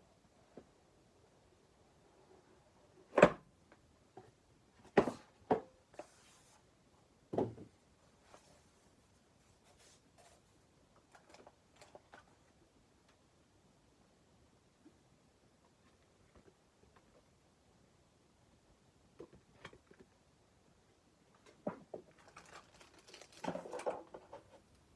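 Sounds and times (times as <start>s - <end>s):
packaging rustle: 22.1s - 24.0s.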